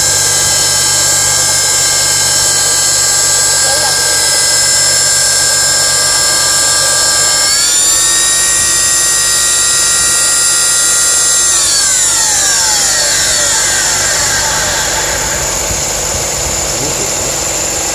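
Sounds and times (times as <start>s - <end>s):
air pump whining: 0.0s - 17.9s
low engine hum: 13.7s - 17.9s.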